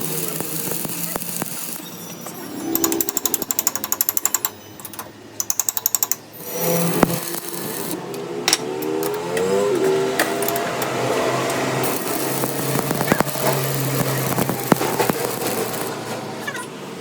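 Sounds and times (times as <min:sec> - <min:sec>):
power tool rapid hammering: 0:00.0 - 0:01.8, 0:02.8 - 0:16.3
motor with wavering pitch: 0:00.0 - 0:05.2.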